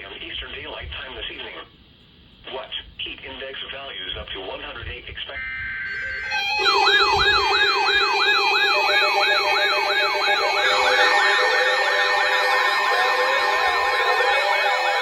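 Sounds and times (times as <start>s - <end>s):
electronic siren falling sweeps: 5.4s - 15.0s
second overlapping siren: 5.4s - 15.0s
steady low tone: 5.4s - 15.0s.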